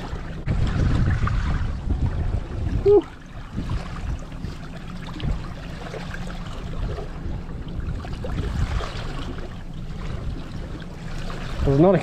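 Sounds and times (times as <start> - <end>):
steady low rumble: 0.0 - 12.0
water splashing against boat: 0.0 - 12.0.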